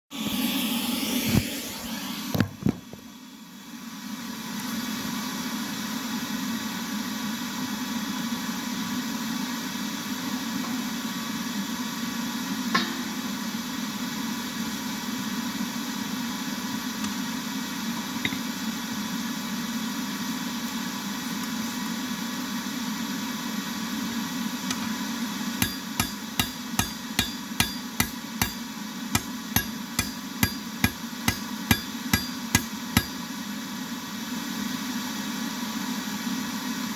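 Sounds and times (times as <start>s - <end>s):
hammer blows on anvil: 12.7s - 13.3s, 25.6s - 33.2s.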